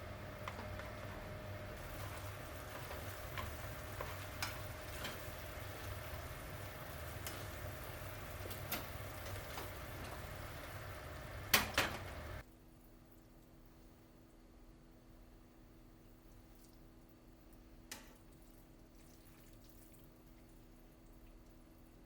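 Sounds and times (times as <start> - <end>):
food sizzling in a frying pan: 0.0 - 12.4.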